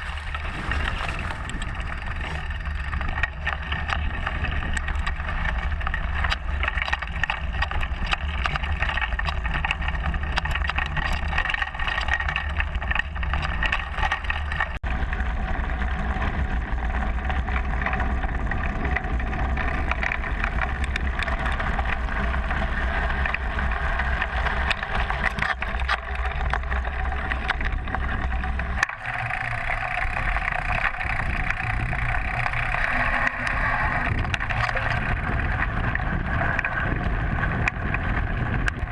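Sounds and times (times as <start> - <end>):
wind rush: 0.0 - 6.0, 14.8 - 38.9
bike rattling and knocking: 0.0 - 38.9
tyre rumble: 0.0 - 38.9.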